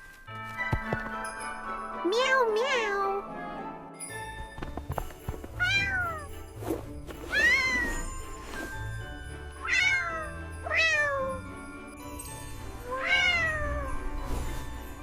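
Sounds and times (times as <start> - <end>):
soft background music: 0.0 - 15.0
cartoon kitten meowing: 2.1 - 3.2, 5.6 - 6.3, 7.3 - 7.9, 9.6 - 11.4, 12.9 - 13.9.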